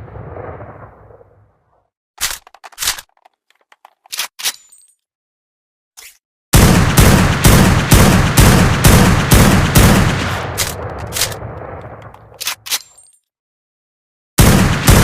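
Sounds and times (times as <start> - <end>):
rifle gunshots with echo: 6.6 - 12.0, 14.4 - 15.0.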